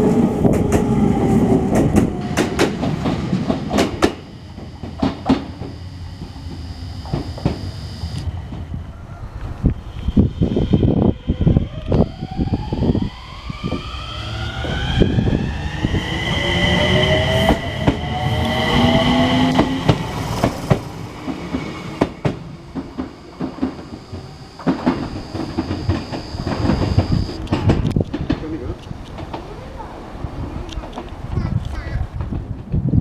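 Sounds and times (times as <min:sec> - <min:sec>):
electric train motors whining: 0:00.4 - 0:27.8
wheels clacking over rail joints: 0:19.4 - 0:30.0.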